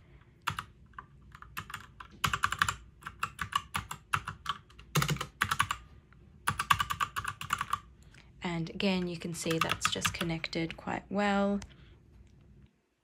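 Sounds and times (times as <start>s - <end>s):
mechanical keyboard typing: 0.4s - 5.8s, 6.5s - 7.9s, 8.9s - 10.8s.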